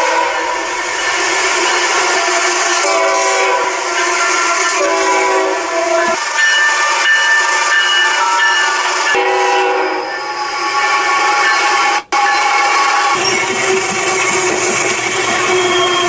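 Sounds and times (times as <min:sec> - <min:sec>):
bridge humming under traffic: 0:00.0 - 0:06.2.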